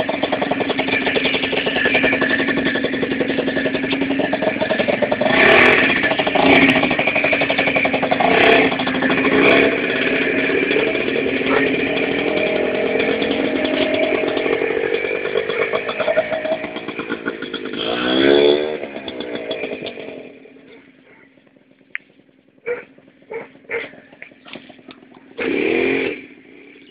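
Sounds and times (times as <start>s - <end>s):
scooter engine revving: 0.0s - 26.9s.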